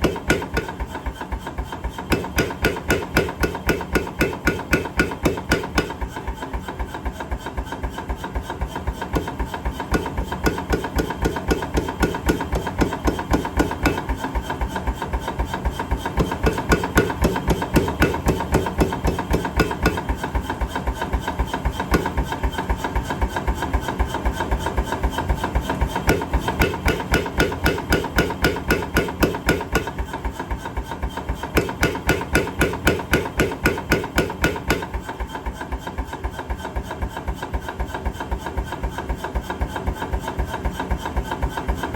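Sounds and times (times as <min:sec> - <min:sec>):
power hammer striking hot metal: 0:00.0 - 0:00.9, 0:02.0 - 0:06.1, 0:09.2 - 0:14.2, 0:16.1 - 0:20.3, 0:21.7 - 0:22.5, 0:26.0 - 0:30.2, 0:31.5 - 0:35.1.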